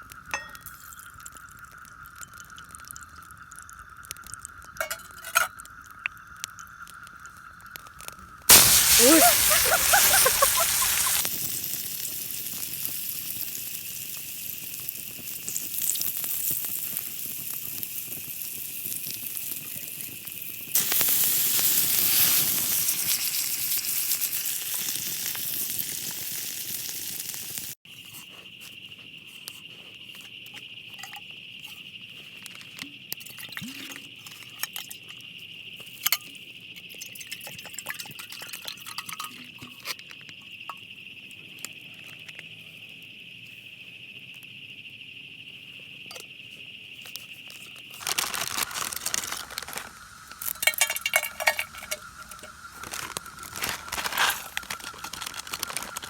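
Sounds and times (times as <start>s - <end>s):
insects droning: 0.9s - 56.0s
fire crackles: 8.4s - 27.8s, 48.0s - 56.0s
food sizzling: 8.5s - 27.8s, 48.0s - 56.0s.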